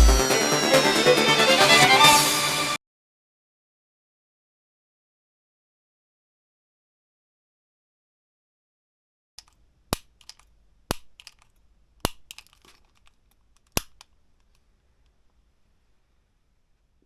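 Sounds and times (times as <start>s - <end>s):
sharp clicks: 9.4s - 15.4s.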